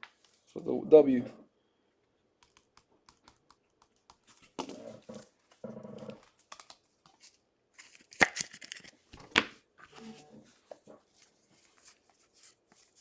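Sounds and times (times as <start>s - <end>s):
cards being handled clicking: 6.4s - 9.5s.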